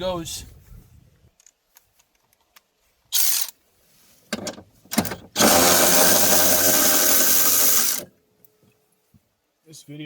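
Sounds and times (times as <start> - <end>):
power tool on bolts: 5.0 - 8.1.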